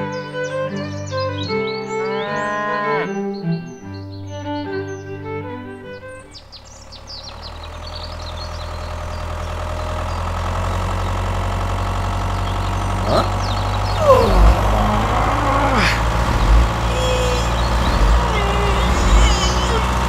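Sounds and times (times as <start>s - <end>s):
birds chirping: 0.0s - 20.0s
engine idling: 4.9s - 20.0s
short falling squeals: 12.6s - 20.0s.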